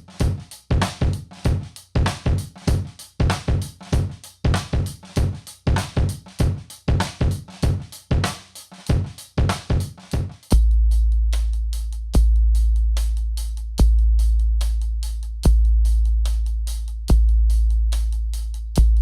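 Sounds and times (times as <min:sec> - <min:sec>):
drum kit playing a groove: 0:00.0 - 0:10.6.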